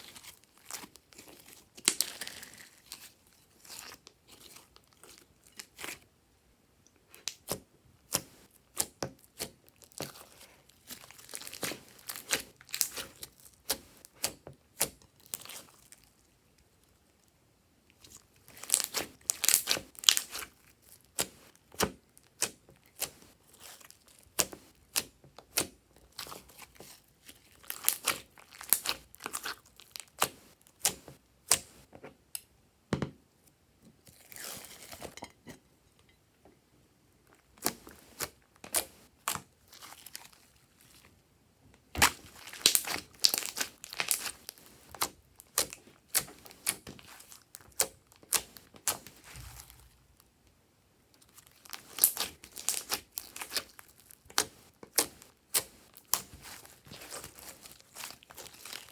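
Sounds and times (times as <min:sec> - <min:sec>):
sticky slime clicks and crackles: 0:18.5 - 0:20.5, 0:41.9 - 0:49.7, 0:51.2 - 0:58.9
rustling: 0:51.7 - 0:58.9.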